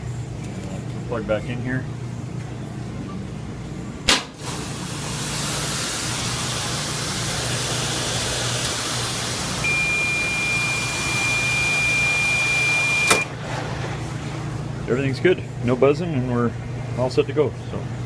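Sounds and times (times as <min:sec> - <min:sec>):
washer hissing over low hum: 0:00.0 - 0:18.0
steady high beep: 0:09.6 - 0:13.2.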